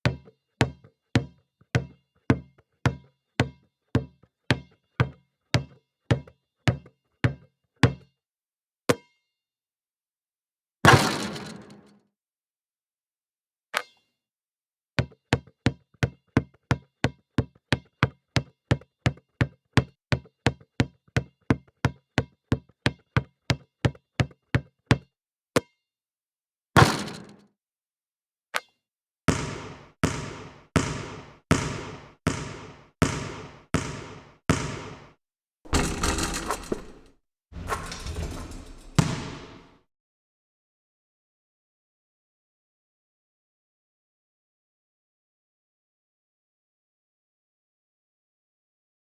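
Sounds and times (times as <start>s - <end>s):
basketball bouncing on hard floor: 29.3s - 35.1s, 35.7s - 39.8s.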